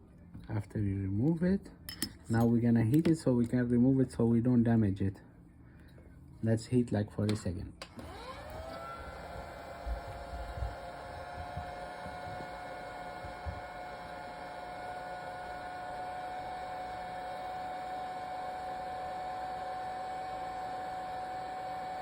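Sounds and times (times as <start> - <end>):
heat gun fan whining: 7.2 - 22.0.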